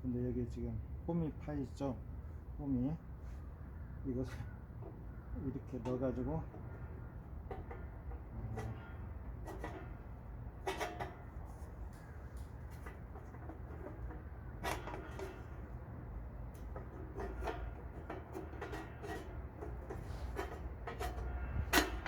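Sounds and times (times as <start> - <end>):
sheet metal knocking and clanking: 5.7 - 15.7, 16.5 - 22.0.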